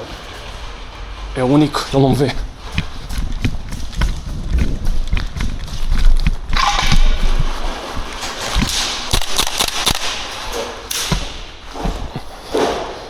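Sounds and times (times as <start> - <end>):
clicks and knocks: 6.2 - 13.0
airsoft gun shots: 8.7 - 11.4.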